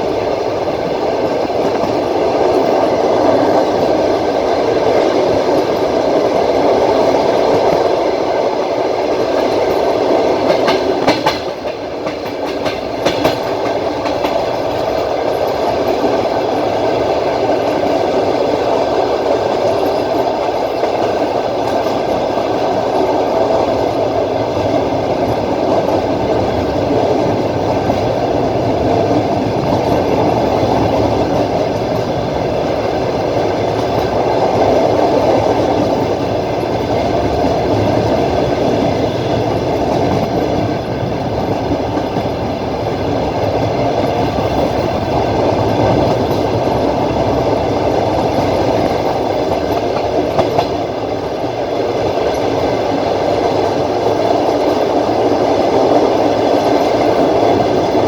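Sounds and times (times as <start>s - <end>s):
train wheels on track: 0.0s - 58.0s.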